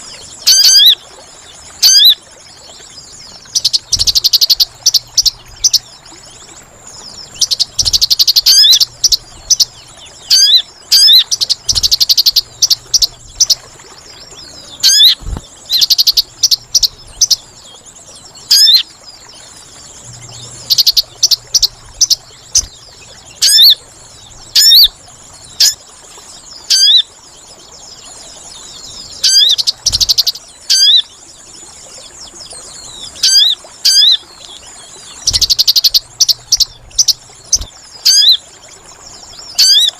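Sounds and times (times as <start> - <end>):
bird lure calls: 0.0 - 1.0, 1.8 - 2.2, 3.4 - 6.2, 7.0 - 13.8, 14.7 - 17.5, 18.4 - 18.9, 19.9 - 25.8, 26.7 - 27.1, 29.2 - 31.1, 33.2 - 38.4, 39.5 - 39.9
faint steady high buzz: 2.9 - 26.7.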